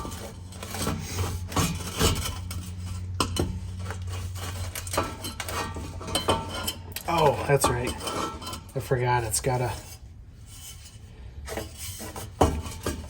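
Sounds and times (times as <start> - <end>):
metal pipe clinking and scraping: 0.0 - 13.0.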